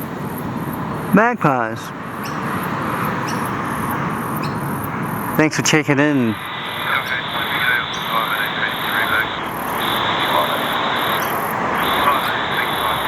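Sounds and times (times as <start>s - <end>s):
insects chirring: 2.1s - 13.0s
steady hiss: 5.4s - 13.0s.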